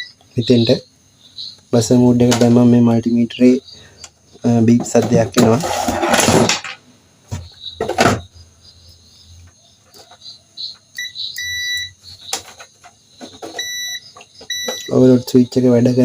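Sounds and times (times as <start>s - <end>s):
multimeter beeping: 0.0s - 0.2s, 10.7s - 12.6s, 13.4s - 15.3s
knocks: 4.7s - 8.3s.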